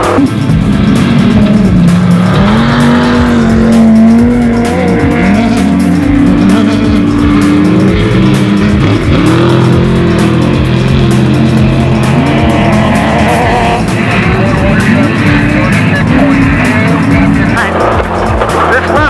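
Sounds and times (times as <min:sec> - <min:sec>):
race truck engine revving: 0:00.0 - 0:19.0.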